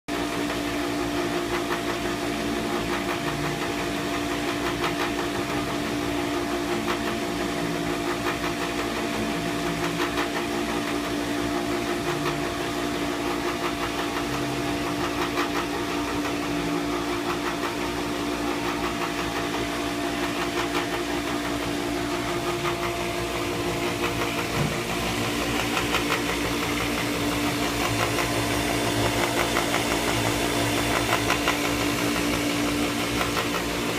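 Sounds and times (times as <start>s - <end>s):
pump motor humming: 0.1s - 33.9s.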